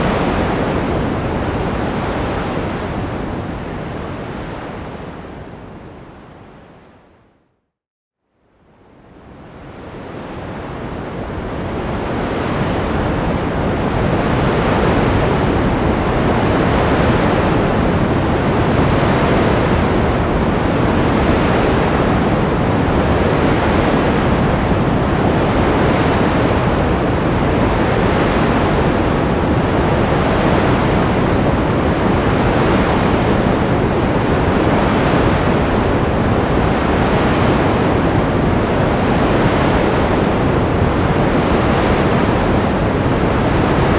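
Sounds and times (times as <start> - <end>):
ocean waves breaking: 9.8 - 43.9.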